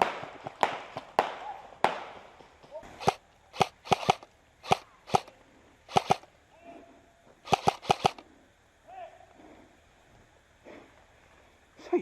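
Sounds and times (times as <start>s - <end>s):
airsoft gunshots: 3.0s - 5.3s, 5.9s - 6.3s, 7.5s - 8.2s.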